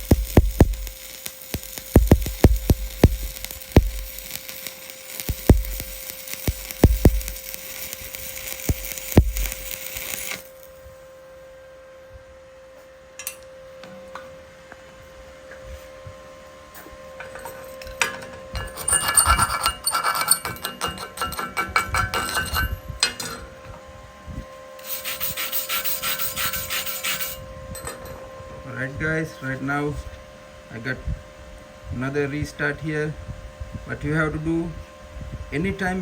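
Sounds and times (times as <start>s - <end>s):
wire brush scratching: 0.0s - 10.8s, 18.6s - 20.6s, 24.8s - 27.4s
welding arc crackling: 0.0s - 11.0s, 17.2s - 23.3s, 24.8s - 27.4s.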